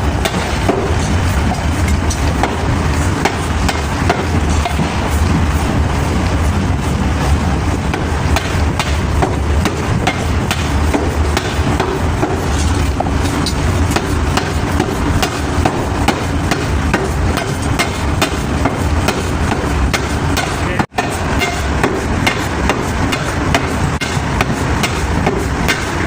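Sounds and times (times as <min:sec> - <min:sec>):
low machine hum: 0:00.0 - 0:26.0
hammer blows on metal: 0:03.2 - 0:05.2, 0:07.9 - 0:26.0.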